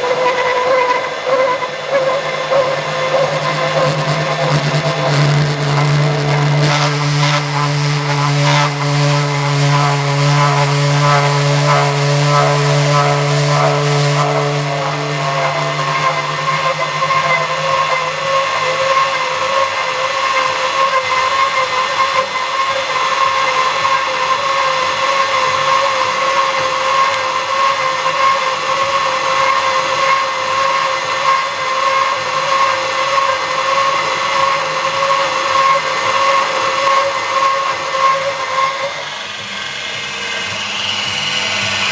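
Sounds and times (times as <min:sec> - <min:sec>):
cutter boring into steel: 0:00.0 - 0:41.9
drill press motor whine: 0:00.0 - 0:41.9
low hum: 0:00.5 - 0:20.2.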